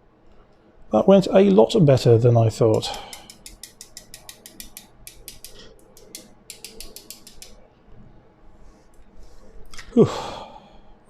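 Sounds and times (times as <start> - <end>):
bicycle hub ratchet ticking: 2.7 - 7.6.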